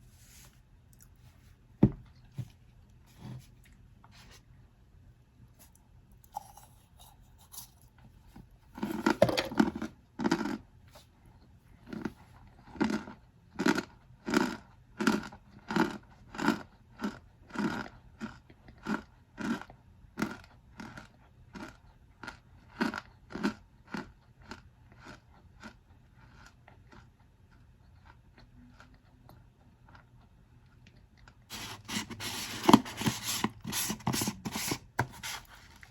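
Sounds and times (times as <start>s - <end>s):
cornstarch crunching and squeaking: 31.5s - 35.9s.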